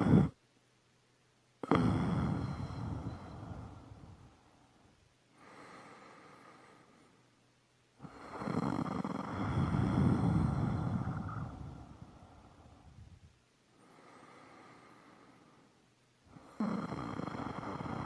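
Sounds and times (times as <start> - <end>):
person snoring loudly: 0.0 - 0.4, 1.6 - 3.1, 8.2 - 11.7, 16.6 - 18.0
person breathing: 2.4 - 7.3, 13.7 - 15.8.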